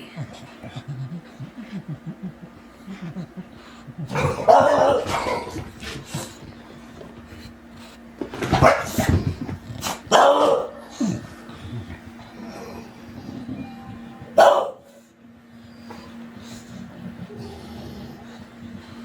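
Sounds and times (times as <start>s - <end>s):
dog barking: 4.4s - 5.4s, 8.6s - 8.9s, 10.1s - 10.8s, 14.4s - 14.9s.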